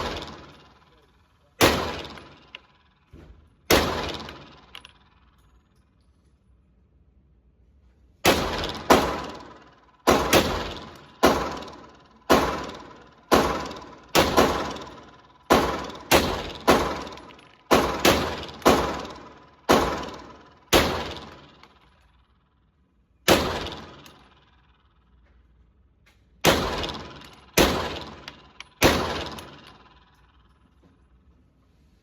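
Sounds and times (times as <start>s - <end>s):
pistol shots with echo: 0.0s - 0.8s, 1.6s - 2.9s, 3.7s - 5.1s, 8.2s - 21.6s, 23.3s - 24.6s, 26.4s - 30.0s.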